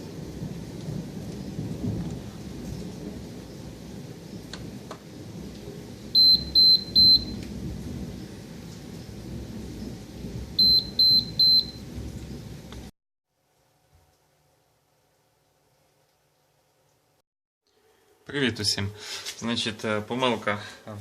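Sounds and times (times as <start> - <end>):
fridge alarm short high beeps: 6.2 - 7.4, 10.6 - 11.8.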